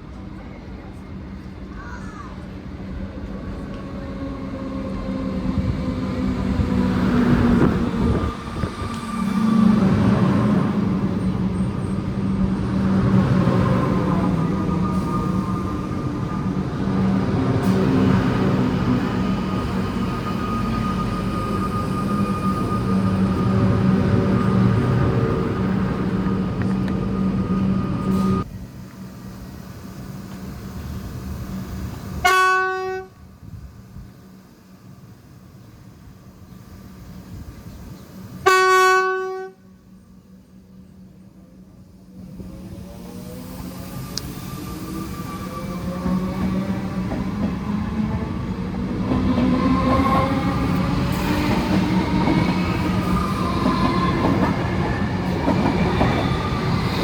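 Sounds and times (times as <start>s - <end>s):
rumbling rail noise: 0.0s - 57.0s
electric train humming: 0.1s - 57.0s
train horn blast: 32.2s - 33.2s, 38.4s - 39.7s.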